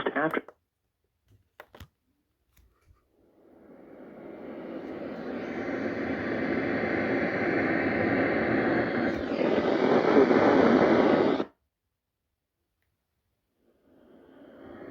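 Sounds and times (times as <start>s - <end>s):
radio static hiss: 0.0s - 0.5s, 3.6s - 11.6s.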